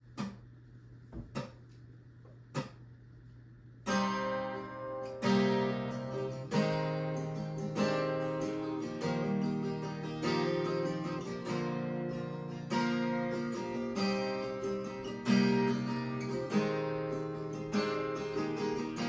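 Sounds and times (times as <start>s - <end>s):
acoustic guitar chords strummed: 3.8s - 19.0s.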